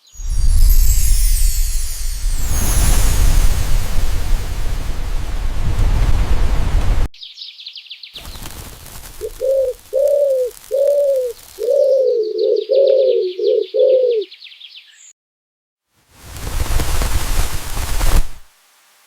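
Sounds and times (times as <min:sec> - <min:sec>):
loud hiss of noise: 0:00.2 - 0:05.8, 0:16.2 - 0:19.0
insects chirring: 0:08.2 - 0:12.1
dove cooing: 0:09.2 - 0:14.3.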